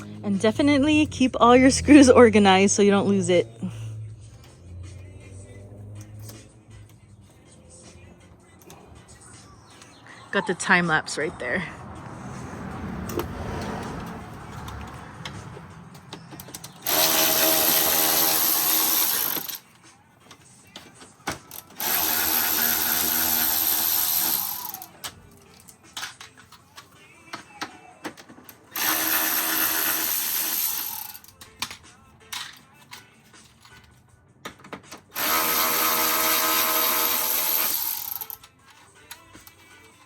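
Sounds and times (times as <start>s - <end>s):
tools and parts clicking and rattling: 13.0s - 40.0s
cordless power driver running: 16.8s - 19.6s, 21.6s - 24.9s, 28.8s - 31.3s, 35.2s - 38.4s.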